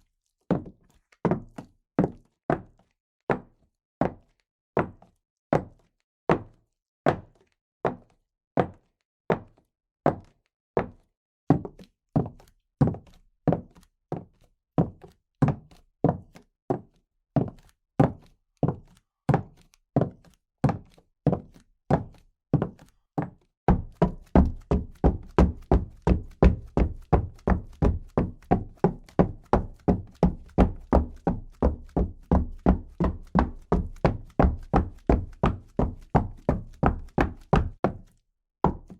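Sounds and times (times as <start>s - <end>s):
fast heavy footsteps: 23.7s - 37.8s.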